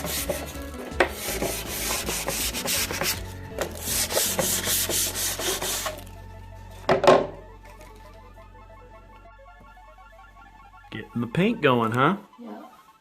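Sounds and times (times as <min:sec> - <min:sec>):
sandpaper rubbing on wood finish: 0:00.0 - 0:06.1.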